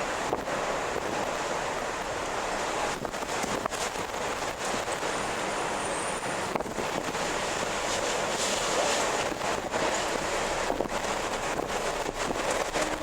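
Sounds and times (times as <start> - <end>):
strong wind blowing: 0.0 - 13.0.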